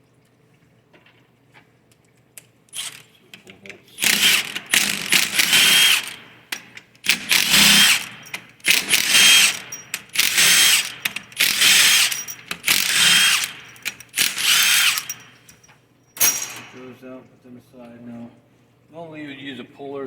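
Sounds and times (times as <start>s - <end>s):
power driver whining: 4.0s - 16.8s.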